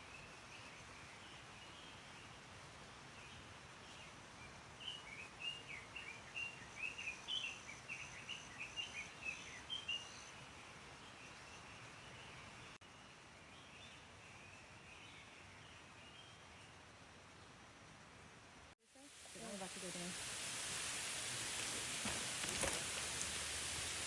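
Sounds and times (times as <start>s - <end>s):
small birds chirping: 0.0s - 17.5s
steady outdoor hiss: 0.0s - 24.0s.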